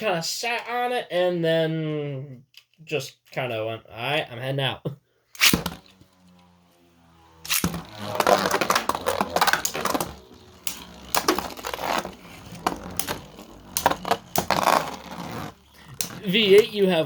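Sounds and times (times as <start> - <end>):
spinning tops clashing: 7.5 - 16.7.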